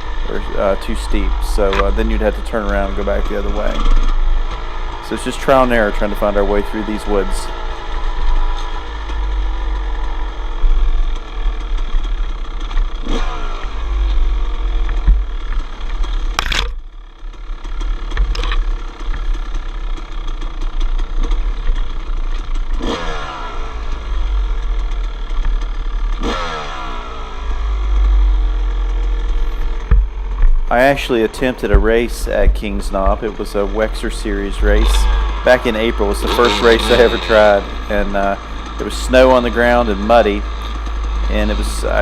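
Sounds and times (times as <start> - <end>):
heavy low rumble: 0.0 - 13.1, 27.2 - 42.0
dirt bike engine revving: 0.0 - 16.5, 17.1 - 42.0.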